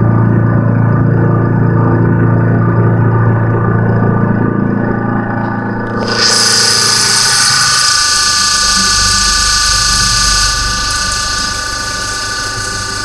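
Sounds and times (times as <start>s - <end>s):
milling machine whine: 5.4s - 13.0s
hissing metal cutting noise: 5.5s - 13.0s.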